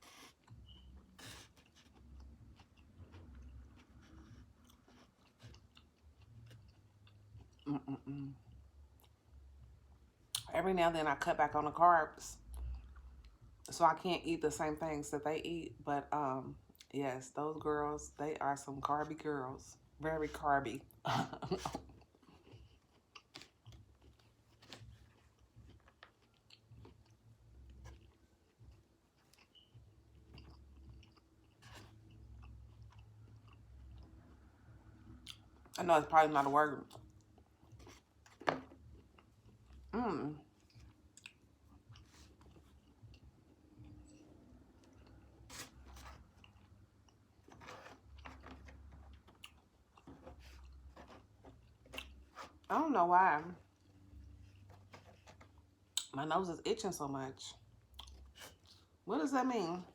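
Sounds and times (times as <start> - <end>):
person chewing food: 0.0 - 9.5, 21.6 - 35.7, 36.9 - 52.6, 57.8 - 59.0.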